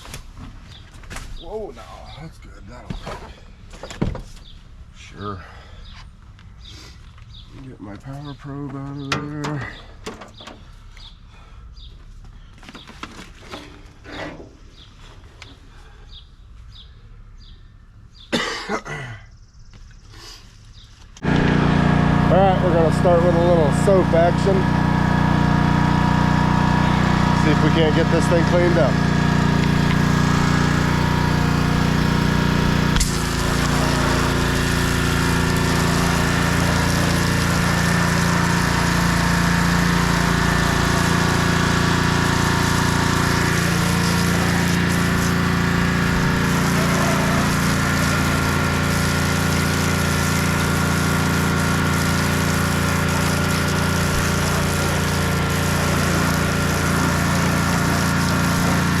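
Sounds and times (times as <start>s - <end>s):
pressure washer engine running: 21.2s - 59.0s.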